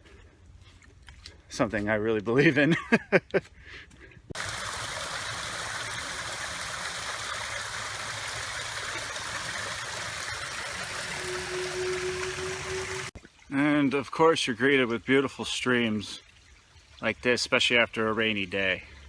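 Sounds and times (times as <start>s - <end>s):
stream water rushing: 4.4s - 13.2s.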